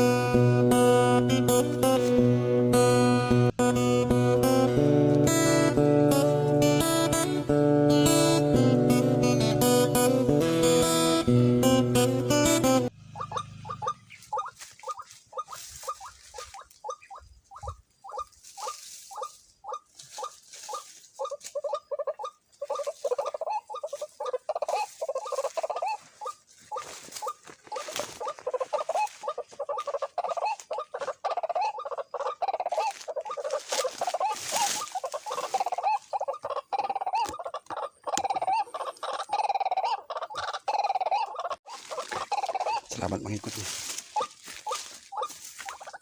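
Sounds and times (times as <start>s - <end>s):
waterhen calling harsh notes: 11.8s - 46.0s.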